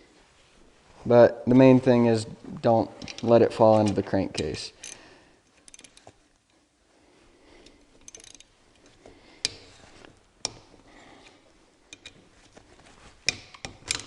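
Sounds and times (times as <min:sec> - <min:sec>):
ratchet clicks: 0:05.6 - 0:06.1, 0:08.0 - 0:09.7.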